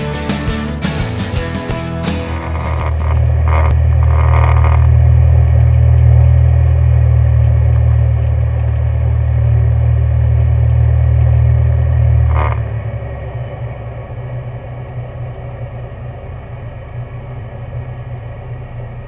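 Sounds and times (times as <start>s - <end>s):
bursts of higher noise: 2.0s - 18.9s
light aircraft engine drone: 2.2s - 19.0s.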